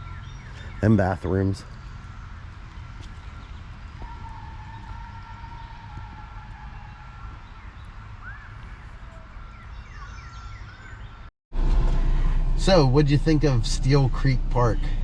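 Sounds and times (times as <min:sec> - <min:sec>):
steady low rumble: 0:11.6 - 0:15.0.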